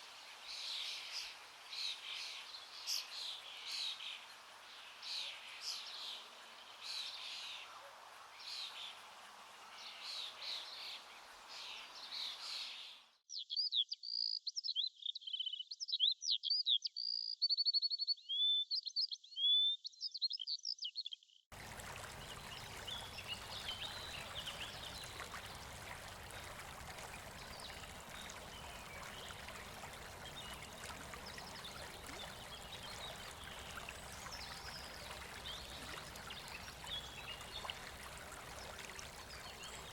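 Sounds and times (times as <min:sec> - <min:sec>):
river water flowing: 0:00.0 - 0:12.7, 0:21.5 - 0:39.9
birds singing and calling: 0:22.1 - 0:39.9.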